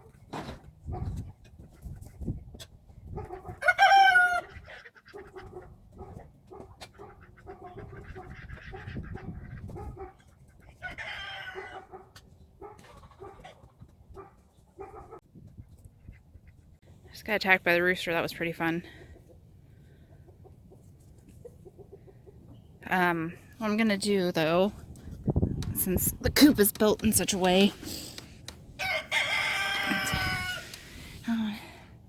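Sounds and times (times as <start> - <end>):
chickens clucking: 0.8 - 16.8, 19.0 - 22.8
rooster crowing: 3.6 - 4.5, 11.0 - 11.8, 28.8 - 30.8.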